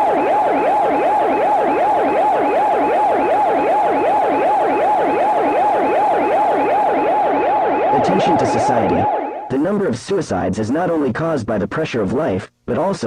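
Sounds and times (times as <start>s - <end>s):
electronic siren sweeping tone: 0.0s - 9.6s.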